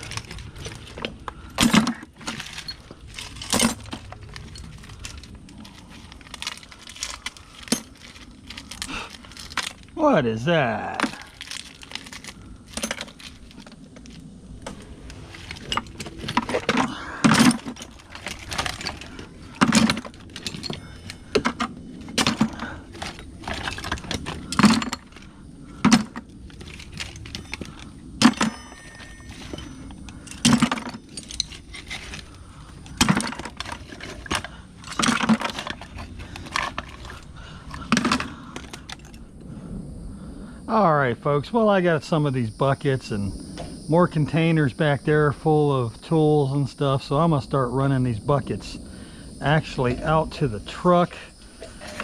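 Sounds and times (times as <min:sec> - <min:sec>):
metal tools clanking: 0:00.0 - 0:10.0, 0:10.8 - 0:39.2, 0:51.6 - 0:52.0.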